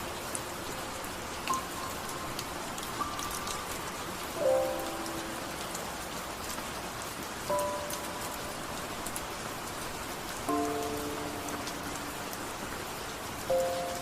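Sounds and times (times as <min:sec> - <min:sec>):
rain on a car roof: 0:00.0 - 0:14.0
soft musical notes: 0:07.5 - 0:08.7, 0:10.5 - 0:12.8.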